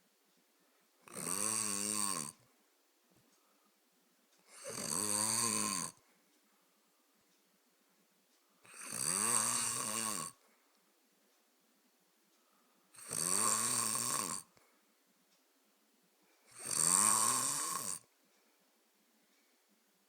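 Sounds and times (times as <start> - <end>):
snoring with wavering pitch: 1.0 - 2.4, 4.5 - 6.0, 8.7 - 10.4, 13.0 - 14.5, 16.5 - 18.1.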